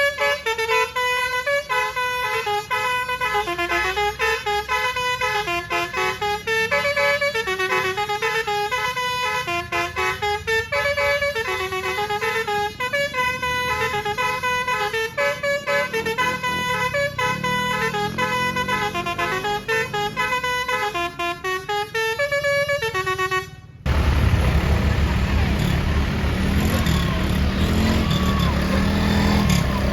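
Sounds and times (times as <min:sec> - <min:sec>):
bus horn playing a tune: 0:00.0 - 0:29.9
low rumble: 0:23.9 - 0:27.6.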